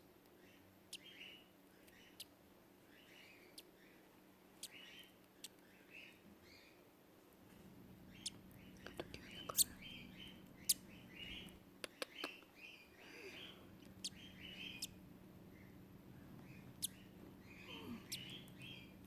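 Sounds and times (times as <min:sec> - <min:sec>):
chick peeping: 0:08.1 - 0:19.0.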